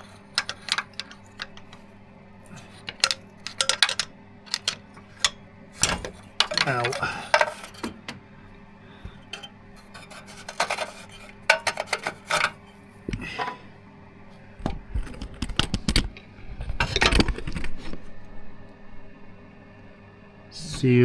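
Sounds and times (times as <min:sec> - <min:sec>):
metal tools clinking and knocking: 0:02.8 - 0:07.9.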